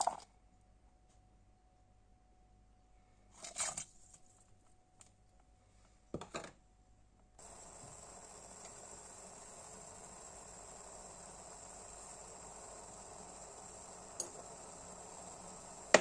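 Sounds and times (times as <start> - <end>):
steady hiss: 7.4 - 16.0.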